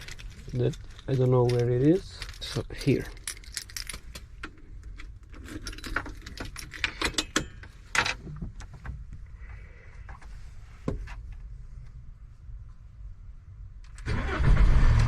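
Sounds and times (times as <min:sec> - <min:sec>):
keys jangling: 0:00.0 - 0:07.6.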